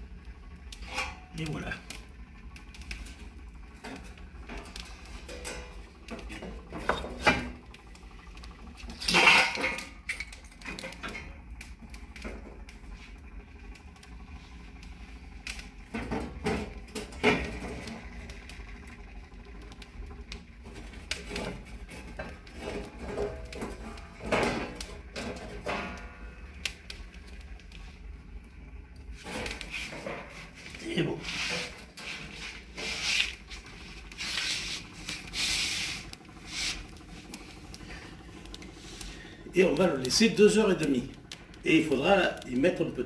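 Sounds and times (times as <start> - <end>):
low steady hum: 0.0 - 43.0
metallic clatter and knocks: 2.9 - 7.6, 8.9 - 11.4, 20.7 - 26.1.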